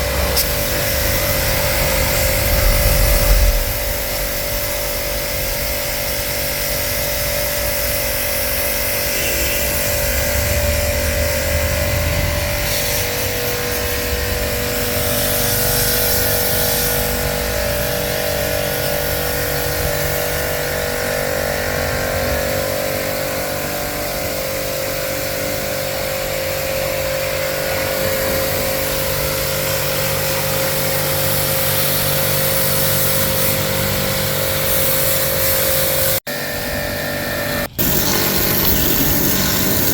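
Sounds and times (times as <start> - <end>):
loud hiss: 0.0 - 21.3, 26.6 - 36.3, 37.6 - 39.9
electric motor humming: 26.8 - 39.9.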